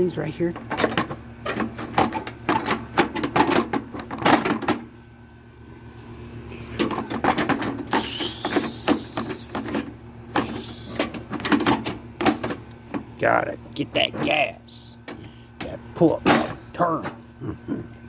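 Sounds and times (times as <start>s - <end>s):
air conditioner humming: 0.0s - 18.0s
clicks and rattles: 0.6s - 4.8s
hissing rush: 8.0s - 9.6s.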